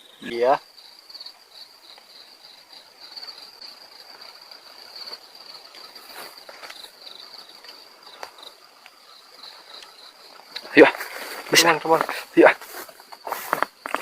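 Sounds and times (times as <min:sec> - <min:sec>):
crickets chirping: 0:00.0 - 0:14.0.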